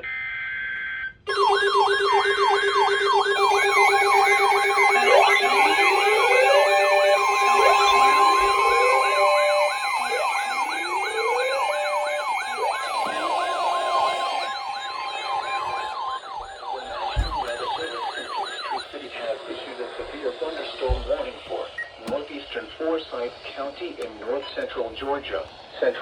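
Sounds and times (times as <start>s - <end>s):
sirens wailing and yelping: 1.3s - 26.0s
steady alert tone: 15.9s - 18.8s.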